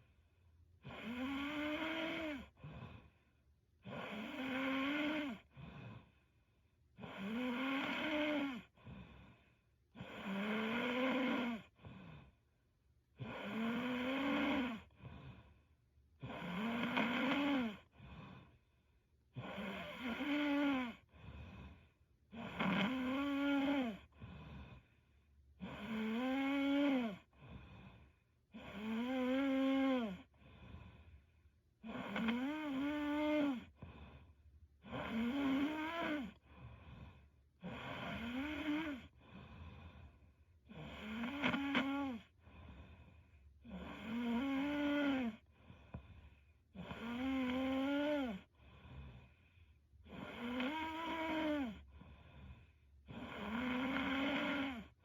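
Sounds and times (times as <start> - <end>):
woman snoring: 0.8 - 3.2, 3.8 - 6.2, 6.9 - 12.4, 13.2 - 15.6, 16.2 - 18.6, 19.3 - 24.9, 25.6 - 31.2, 31.8 - 55.0
soft breath: 2.4 - 3.5, 5.4 - 6.7, 8.6 - 10.0, 14.8 - 15.8, 17.8 - 19.1, 21.0 - 22.1, 24.0 - 25.4, 27.2 - 28.4, 30.2 - 31.6, 33.6 - 34.5, 36.2 - 37.6, 39.0 - 40.5, 42.2 - 43.6, 45.3 - 46.8, 48.2 - 50.0, 51.7 - 53.0.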